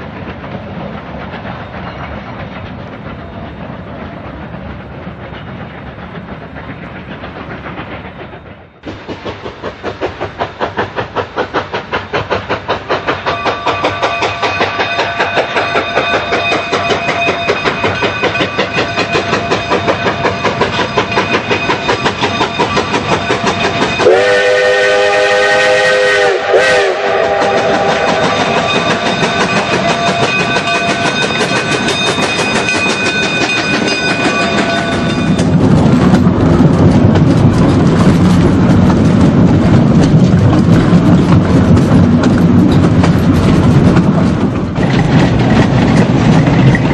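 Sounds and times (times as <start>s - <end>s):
steam locomotive exhaust chuffs: 0.0s - 46.9s
multi-tone steam whistle: 23.8s - 30.3s.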